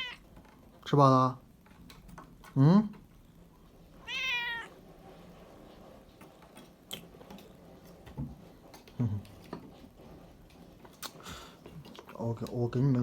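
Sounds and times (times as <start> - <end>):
cat meowing: 0.0 - 0.3, 4.0 - 4.8.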